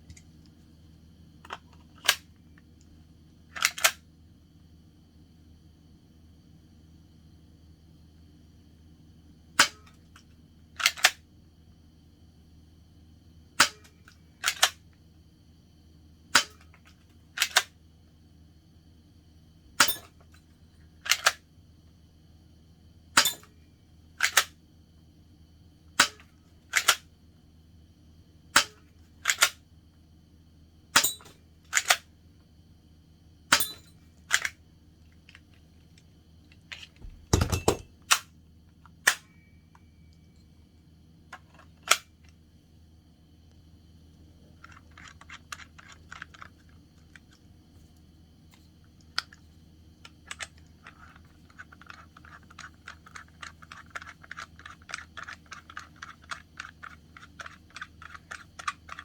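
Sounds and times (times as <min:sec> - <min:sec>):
dense clatter: 0:37.0 - 0:37.9.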